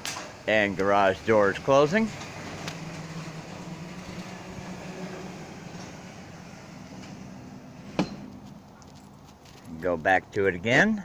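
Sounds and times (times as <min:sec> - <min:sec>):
garage door opener motor running: 0:00.6 - 0:08.6.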